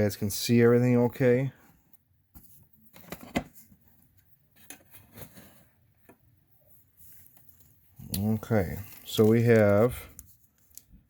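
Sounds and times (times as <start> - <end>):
wax paper crinkling: 6.9 - 11.0.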